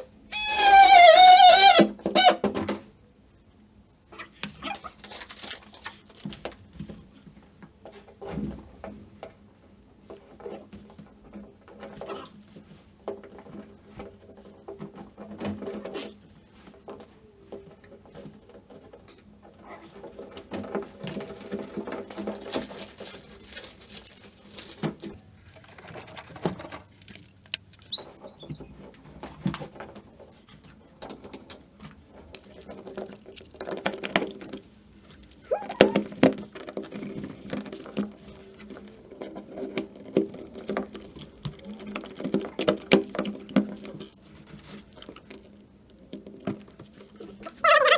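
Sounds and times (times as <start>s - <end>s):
rustling and scraping of handwork: 0.0s - 47.9s
brief high squeak: 0.3s - 2.4s, 35.4s - 36.0s.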